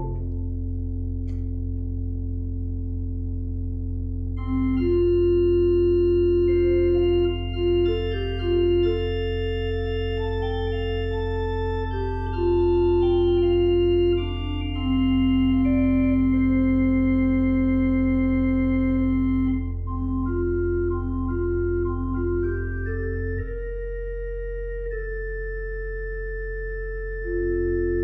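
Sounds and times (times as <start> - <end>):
organ melody: 0.0 - 0.5, 4.4 - 28.0.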